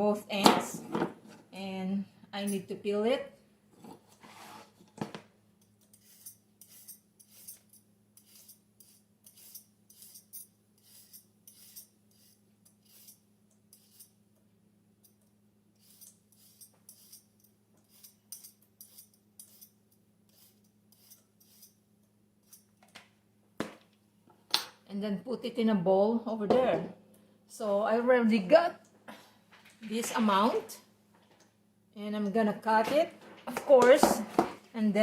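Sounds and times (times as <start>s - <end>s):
peeler scraping carrots: 5.8s - 14.2s, 15.8s - 21.8s.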